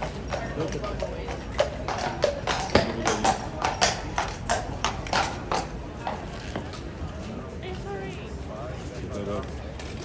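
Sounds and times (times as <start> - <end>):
horse hooves clip-clopping: 0.0 - 7.3.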